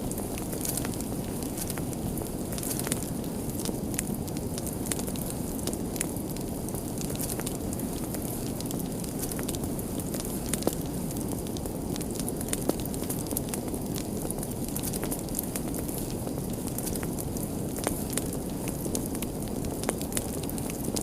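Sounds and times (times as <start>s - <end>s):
fire burning with low rush: 0.0s - 21.0s
fire crackles: 0.0s - 21.0s.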